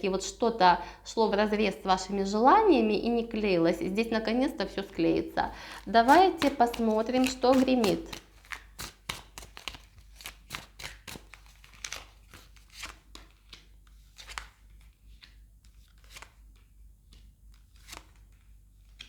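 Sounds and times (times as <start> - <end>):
cards being shuffled: 4.6 - 19.0.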